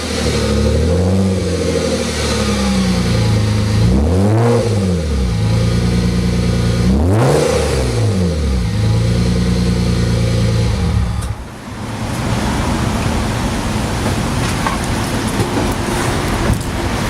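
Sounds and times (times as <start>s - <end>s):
car engine idling and revving: 0.0s - 17.0s.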